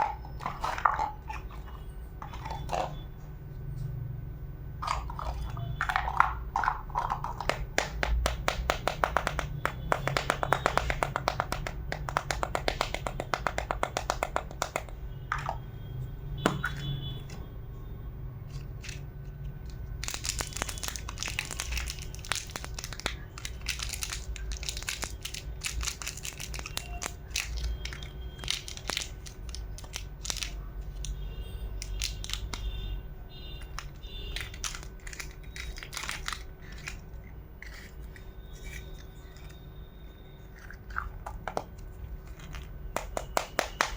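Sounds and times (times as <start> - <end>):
small clicks and taps: 7.4 - 15.5
plastic packaging crinkling: 20.0 - 30.6, 31.8 - 32.8, 33.7 - 39.4.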